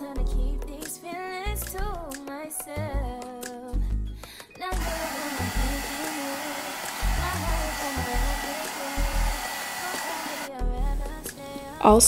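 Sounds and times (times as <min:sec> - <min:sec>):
background music: 0:00.0 - 0:12.0
hair dryer blowing: 0:04.7 - 0:10.5.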